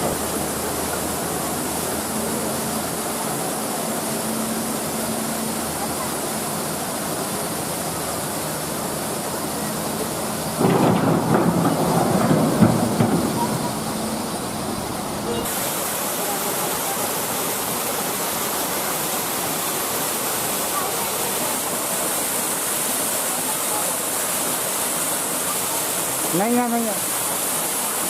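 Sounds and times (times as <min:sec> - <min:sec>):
waterfall rushing: 0:00.0 - 0:28.0
loud uneven sound: 0:09.9 - 0:15.5.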